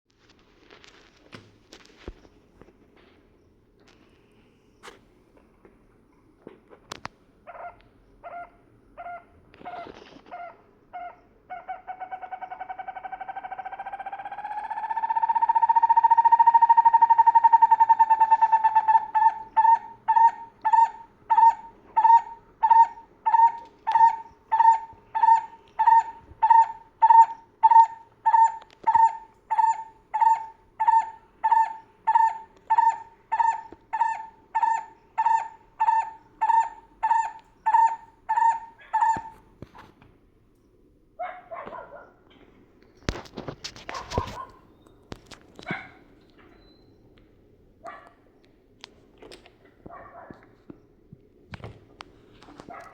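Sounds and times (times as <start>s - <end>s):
bird calling: 7.5s - 39.6s.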